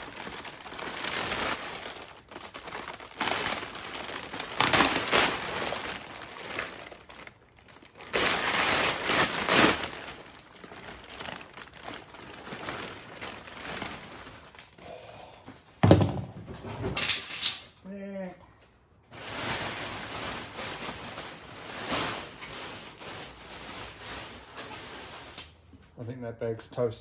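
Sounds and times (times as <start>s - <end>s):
plastic film crinkling and rustling: 0.0s - 14.8s, 19.1s - 25.7s.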